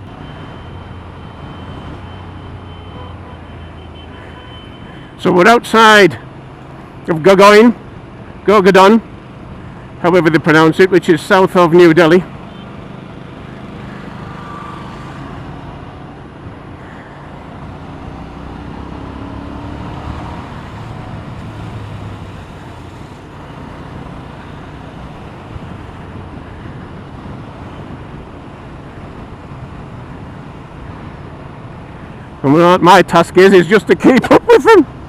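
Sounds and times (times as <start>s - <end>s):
traffic noise: 0.0s - 35.0s
motorbike engine and tyre rumble: 7.8s - 32.5s.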